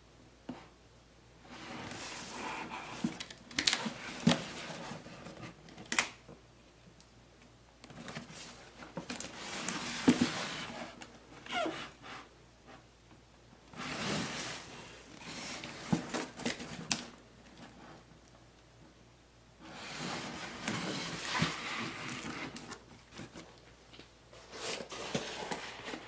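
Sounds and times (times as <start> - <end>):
rustling and scraping: 1.4 - 5.6, 7.9 - 12.9, 13.7 - 18.1, 19.6 - 26.0.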